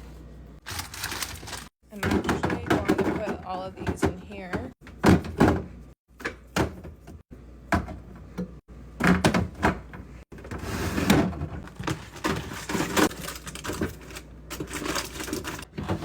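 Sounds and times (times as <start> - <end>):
packaging rustling: 0.6 - 1.8
items clunking in a fridge: 0.6 - 16.0.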